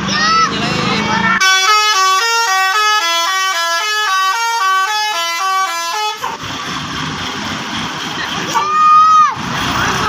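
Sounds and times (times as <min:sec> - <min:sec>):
musical air horn melody: 0:01.4 - 0:06.4.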